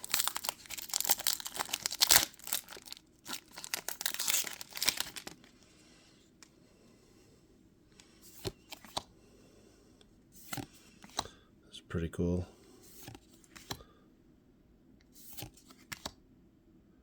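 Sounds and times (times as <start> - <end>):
foil wrapper tearing and crinkling: 0.0 - 5.4.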